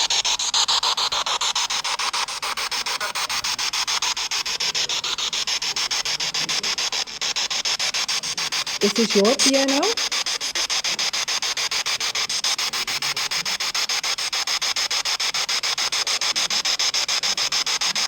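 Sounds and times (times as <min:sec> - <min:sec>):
choppy radio static hiss: 0:08.0 - 0:10.1.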